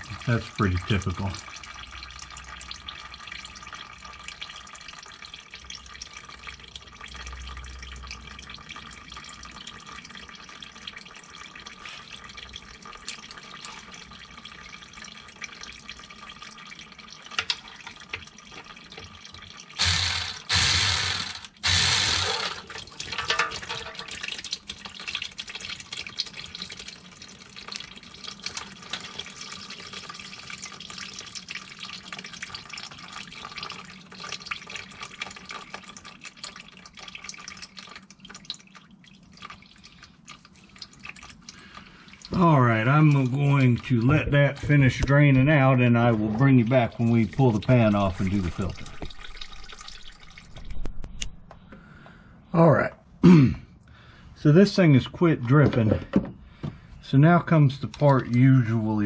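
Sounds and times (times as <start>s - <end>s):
fluid dripping into pan: 0.0s - 19.8s, 22.6s - 51.9s
rushing bursts: 19.8s - 22.6s.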